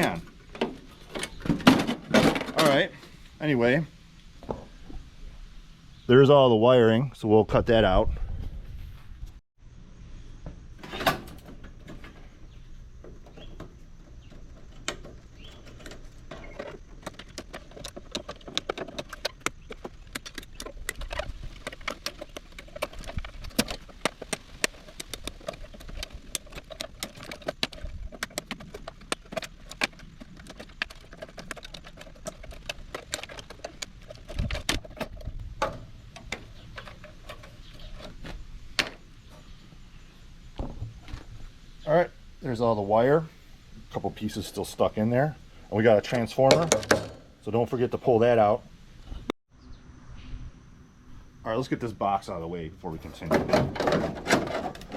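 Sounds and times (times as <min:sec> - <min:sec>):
wires clacking against metal: 0:13.0 - 0:39.0.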